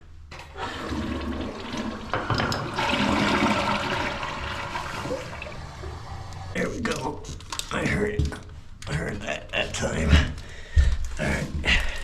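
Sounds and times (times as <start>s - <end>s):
toilet flushing: 0.3s - 6.9s.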